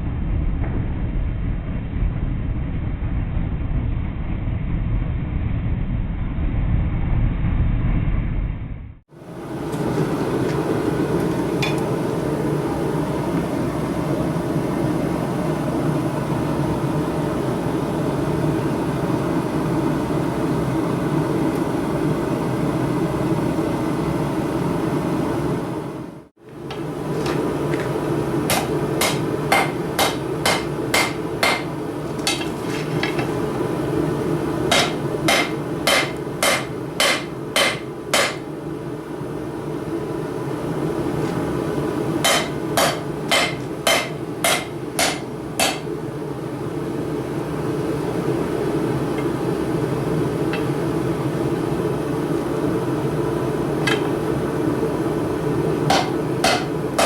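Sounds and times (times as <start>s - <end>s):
hammer striking steel on anvil: 28.5s - 31.7s, 34.7s - 38.4s, 42.2s - 45.8s, 55.9s - 56.8s.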